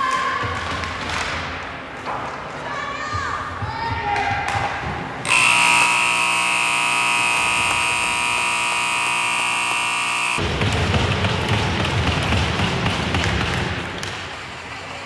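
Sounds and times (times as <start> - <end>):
scoreboard horn blast: 5.3 - 10.4.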